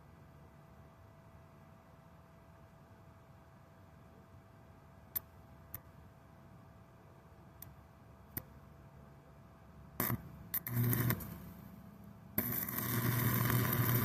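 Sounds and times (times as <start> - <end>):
welding arc crackling and buzzing: 10.0 - 11.8, 12.4 - 14.0.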